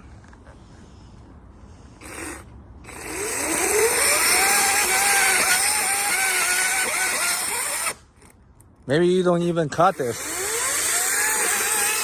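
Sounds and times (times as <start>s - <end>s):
chainsaw cutting wood: 2.0s - 8.0s, 9.9s - 12.0s.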